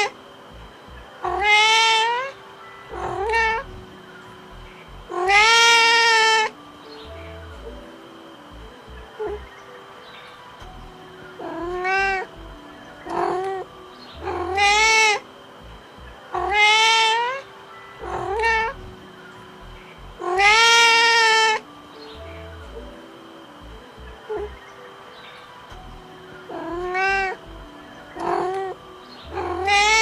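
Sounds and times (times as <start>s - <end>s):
cat meowing: 1.2s - 2.3s, 2.9s - 3.6s, 5.1s - 6.5s, 11.4s - 12.3s, 14.2s - 15.2s, 16.3s - 17.4s, 18.0s - 18.8s, 20.2s - 21.6s, 26.5s - 27.4s, 28.2s - 30.0s.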